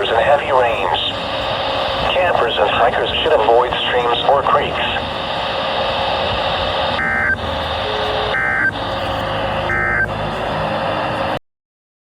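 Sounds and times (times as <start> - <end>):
warbling digital data tones: 0.0 - 11.3
radio hiss: 0.0 - 11.4.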